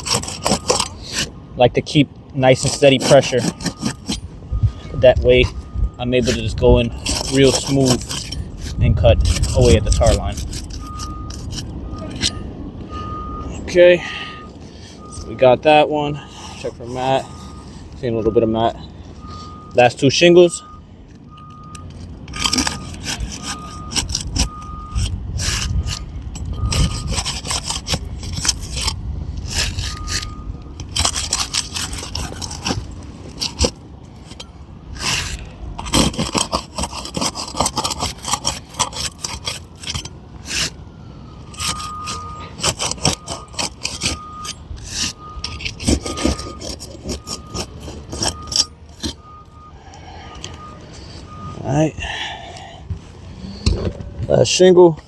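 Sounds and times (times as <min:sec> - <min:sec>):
crowbar scraping roof shingles: 0:00.0 - 0:01.3, 0:01.9 - 0:12.4, 0:22.3 - 0:40.8, 0:41.5 - 0:49.3
truck reversing beeper: 0:00.0 - 0:55.0.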